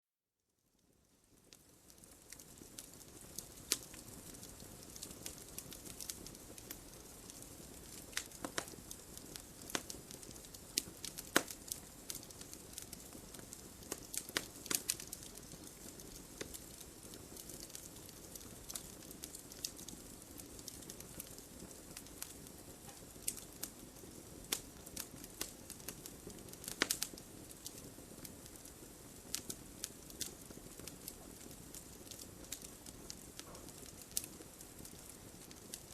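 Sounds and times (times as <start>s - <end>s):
campfire flames hissing: 0.8s - 35.9s
wood crackling and popping: 0.8s - 35.9s.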